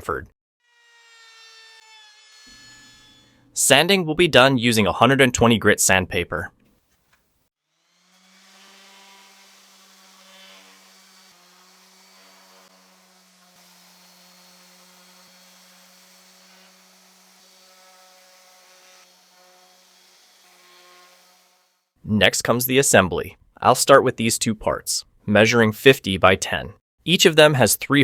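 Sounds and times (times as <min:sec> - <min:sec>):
orbit sander buzzing on wood: 0:00.6 - 0:03.4, 0:07.7 - 0:21.8.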